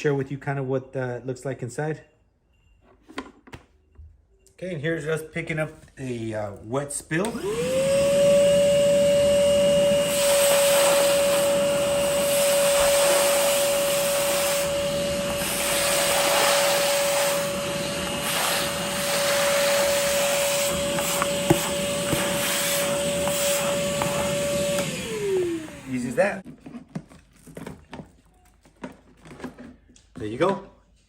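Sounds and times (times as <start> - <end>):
wet dry vacuum whining: 7.2 - 26.4.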